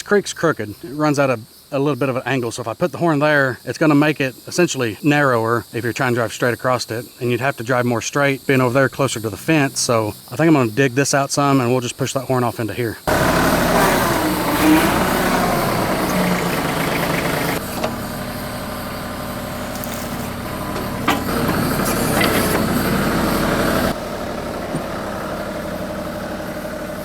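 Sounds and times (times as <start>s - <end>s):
tractor diesel engine running: 13.0s - 27.0s.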